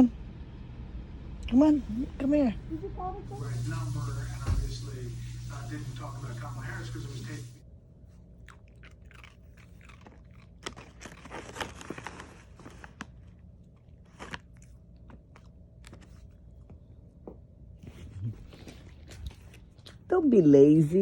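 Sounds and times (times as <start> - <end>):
puppy crunching dry kibble: 8.1 - 16.9, 18.4 - 20.2.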